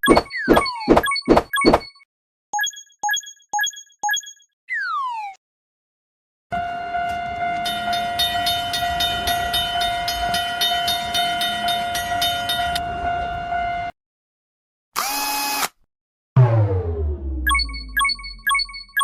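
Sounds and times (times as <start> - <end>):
cartoon train horn: 6.5 - 13.9
sound sliding down in pitch: 16.4 - 18.4.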